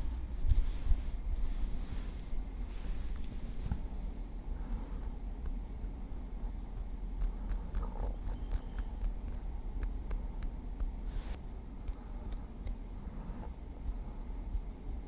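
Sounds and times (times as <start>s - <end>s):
steady low rumble: 0.0s - 8.3s.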